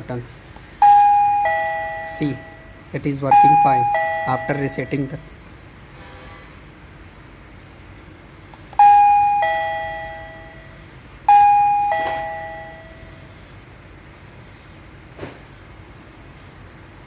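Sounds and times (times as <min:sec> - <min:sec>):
doorbell two-tone chime: 0:00.8 - 0:05.2, 0:08.8 - 0:13.4.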